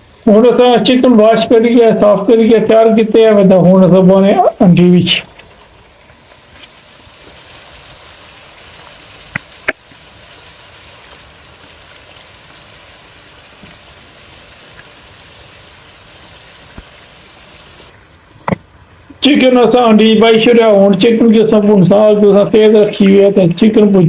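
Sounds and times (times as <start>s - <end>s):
chicken sizzling in butter: 0.0s - 19.2s.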